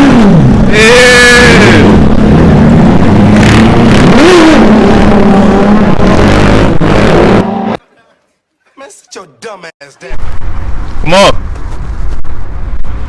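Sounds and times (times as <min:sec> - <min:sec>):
car engine revving: 0:00.0 - 0:07.8.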